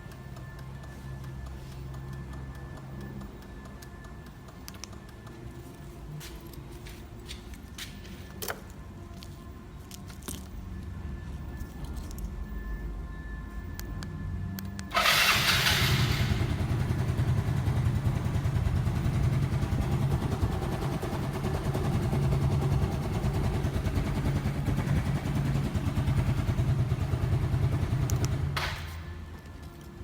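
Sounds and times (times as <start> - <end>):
scooter engine running: 14.9 - 29.1.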